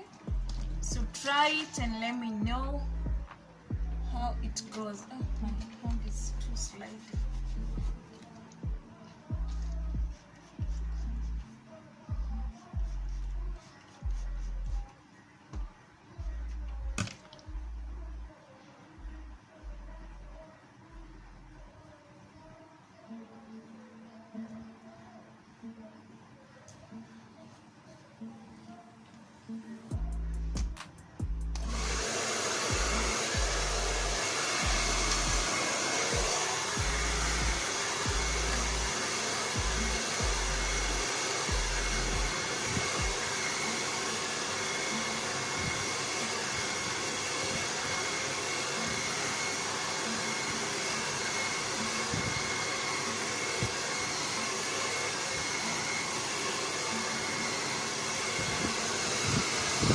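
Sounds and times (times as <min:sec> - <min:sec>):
blow dryer hissing: 0:31.5 - 0:59.9.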